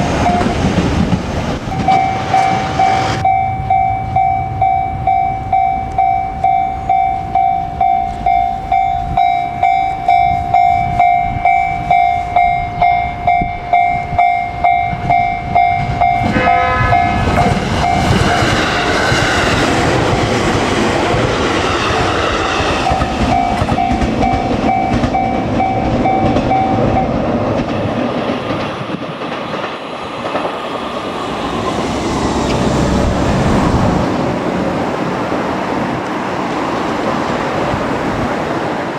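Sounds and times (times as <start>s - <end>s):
level crossing warning bell: 0.0s - 0.7s, 1.7s - 18.4s, 22.8s - 27.3s
train wheels on rails: 0.0s - 38.9s
train horn blast: 16.2s - 19.0s.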